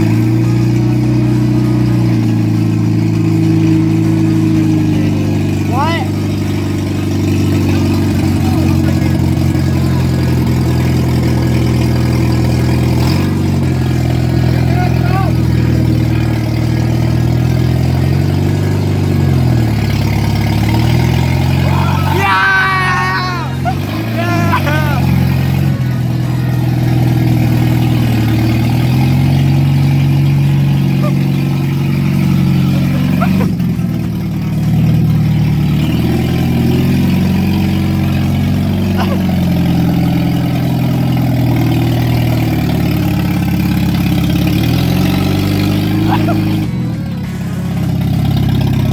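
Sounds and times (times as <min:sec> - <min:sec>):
car engine idling: 0:00.0 - 0:48.9.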